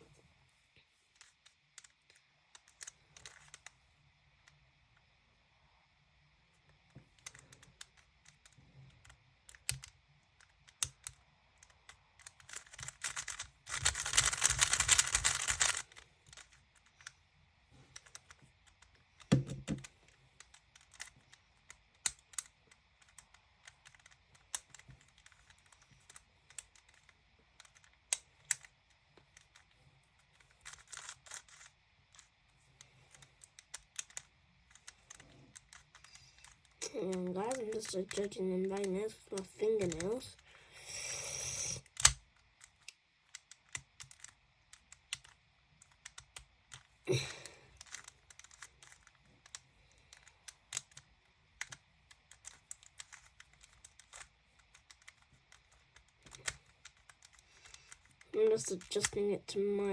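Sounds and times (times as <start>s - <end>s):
puzzle cube layers clicking: 1.2s - 5.2s, 6.6s - 17.2s, 17.9s - 40.2s, 40.9s - 59.3s.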